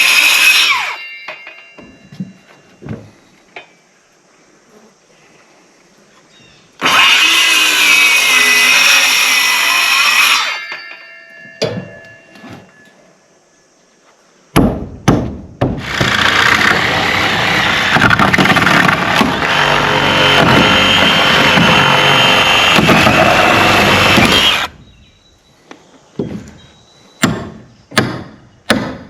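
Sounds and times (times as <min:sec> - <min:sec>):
ringing tone: 0:00.8 - 0:02.9, 0:10.4 - 0:13.1
power saw running: 0:06.8 - 0:10.6, 0:15.8 - 0:24.7
loud machine running: 0:16.1 - 0:24.7.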